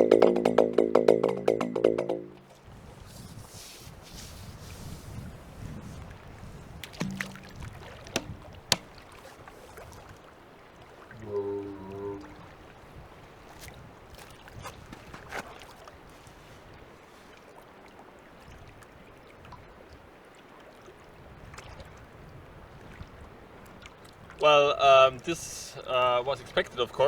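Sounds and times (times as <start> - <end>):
water lapping and splashing: 2.4 - 27.0
light knocks: 6.8 - 9.3.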